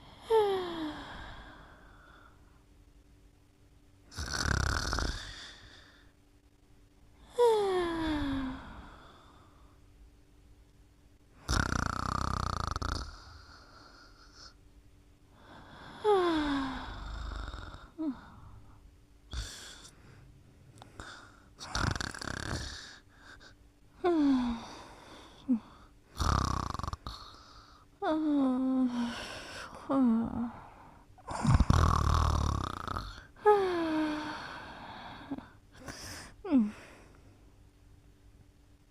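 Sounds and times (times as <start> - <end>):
rasping snores: 4.1 - 5.8, 11.4 - 14.5, 21.0 - 23.0, 26.2 - 27.7, 31.3 - 33.3.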